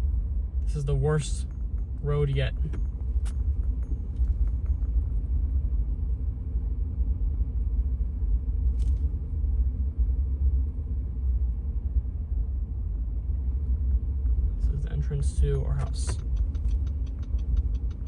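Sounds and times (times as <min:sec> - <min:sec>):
car cab rumble on snow: 0:00.7 - 0:05.6, 0:13.4 - 0:18.0.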